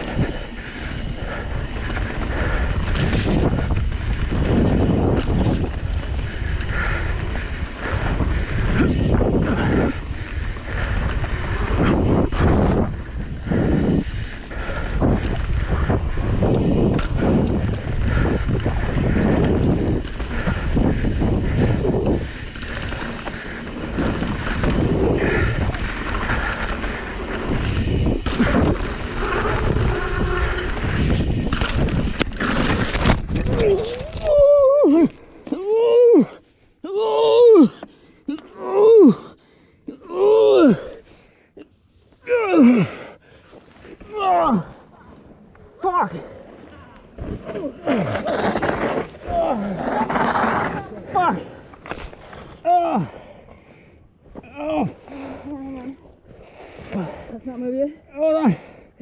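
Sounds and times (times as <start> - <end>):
wind buffeting microphone: 0.0 - 35.2
low rumble of riding: 0.0 - 35.5, 42.3 - 57.2.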